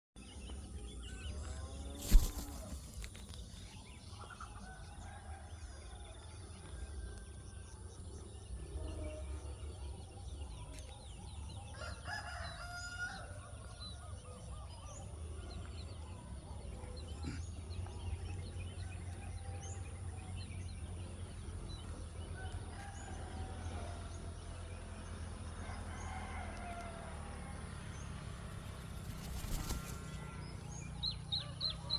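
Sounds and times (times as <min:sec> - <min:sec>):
rooster crowing: 0:11.8 - 0:13.3, 0:25.6 - 0:27.4.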